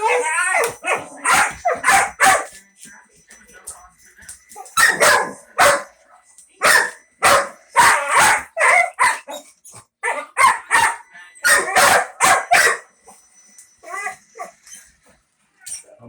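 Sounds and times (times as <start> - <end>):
dog barking rapidly: 0.7 - 2.5, 4.8 - 5.9, 6.6 - 9.3, 10.0 - 12.8.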